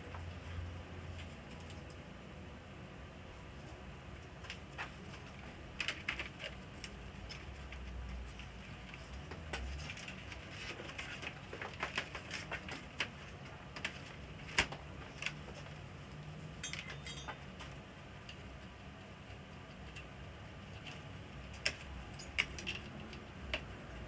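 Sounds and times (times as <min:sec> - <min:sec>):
light metallic clinks: 0:16.6 - 0:17.4
tinkling: 0:16.6 - 0:17.4.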